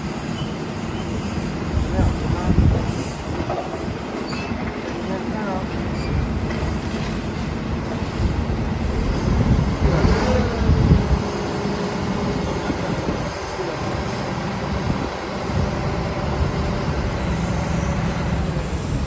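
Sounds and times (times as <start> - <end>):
heavy construction machinery rumbling: 0.0 - 19.0
metal squeal: 5.9 - 6.3.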